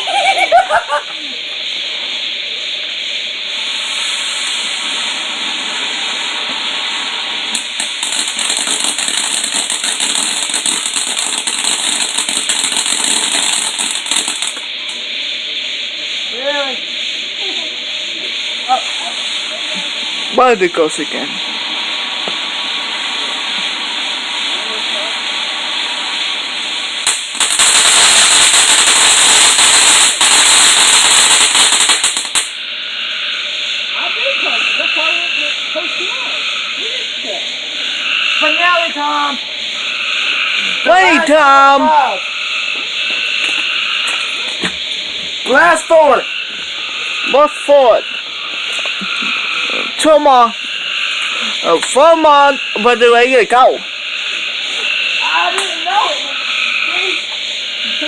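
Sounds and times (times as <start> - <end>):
firework fountain hissing: 0.0 - 58.0
rapid firework crackling: 0.0 - 58.0.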